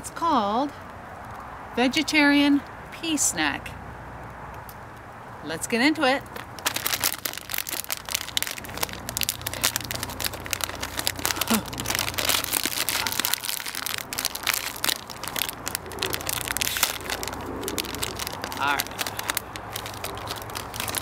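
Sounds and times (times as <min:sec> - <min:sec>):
plastic snack bag crinkling: 0:06.2 - 0:21.0.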